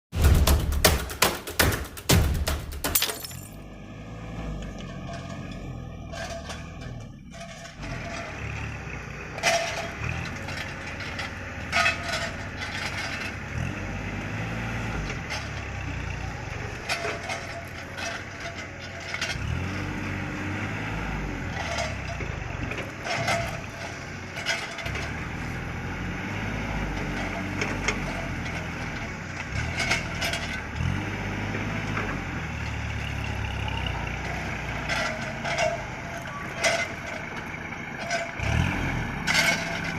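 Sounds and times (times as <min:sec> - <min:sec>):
sharp knocks and clanks: 0:00.1 - 0:03.6, 0:09.3 - 0:14.2, 0:14.9 - 0:20.4, 0:21.4 - 0:26.0, 0:34.0 - 0:38.5
tractor diesel engine running: 0:00.1 - 0:39.9.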